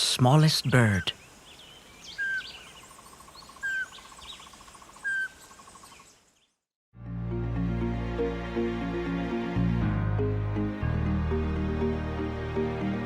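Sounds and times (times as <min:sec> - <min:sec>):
loud bird calls: 0:00.5 - 0:06.5
high bird chirps: 0:00.6 - 0:06.6
music: 0:07.0 - 0:13.0.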